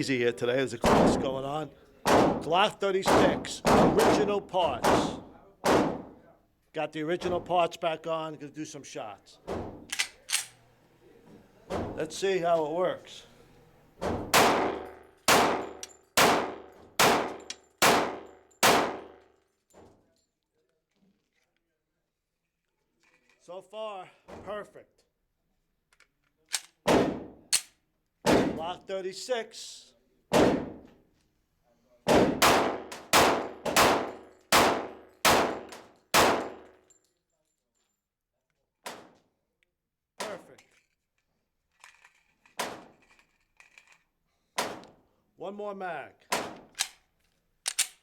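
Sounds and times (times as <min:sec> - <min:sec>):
pistol shots with ringing echo: 0:03.1 - 0:06.1, 0:14.3 - 0:19.2, 0:32.1 - 0:36.7.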